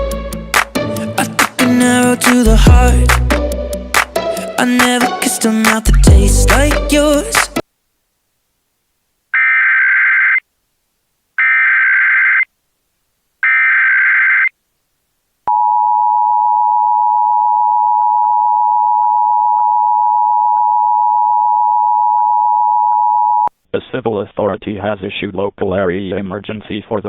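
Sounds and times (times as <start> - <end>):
screeching data bursts: 9.4 - 10.4, 11.4 - 12.5, 13.4 - 14.5.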